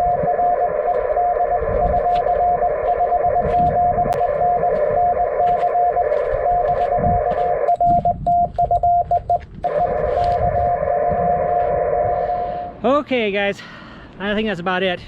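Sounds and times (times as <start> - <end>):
radio band hiss: 0.0 - 7.7
morse code tone: 0.0 - 12.8.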